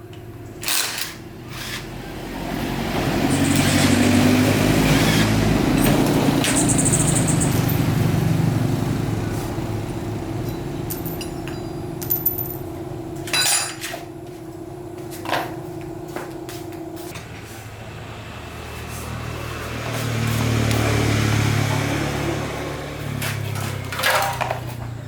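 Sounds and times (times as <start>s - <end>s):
motorbike engine running: 0.3s - 25.0s
metallic clinks and knocks: 10.4s - 12.7s.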